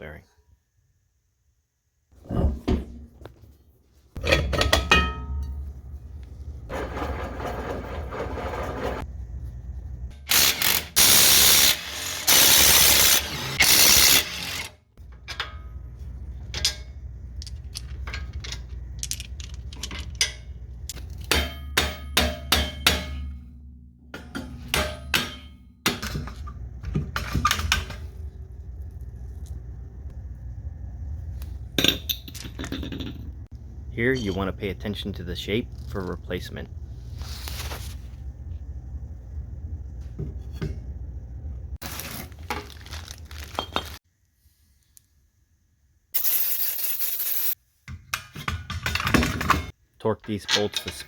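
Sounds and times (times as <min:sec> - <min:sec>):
metal clanks and knocks: 0:04.1 - 0:05.8, 0:15.0 - 0:28.2
power tool bursts: 0:10.2 - 0:14.7.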